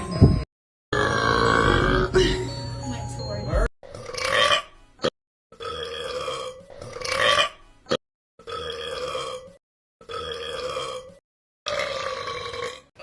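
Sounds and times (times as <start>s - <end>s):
person burping: 0.9s - 2.5s, 4.0s - 4.6s, 5.6s - 13.0s.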